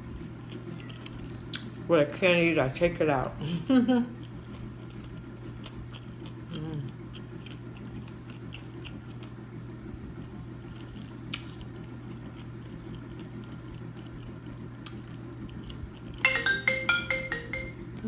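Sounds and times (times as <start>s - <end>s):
chewing and mouth clicks: 0.4s - 1.8s, 4.2s - 9.5s, 10.6s - 16.2s
marimba-style phone ringtone: 16.2s - 18.0s.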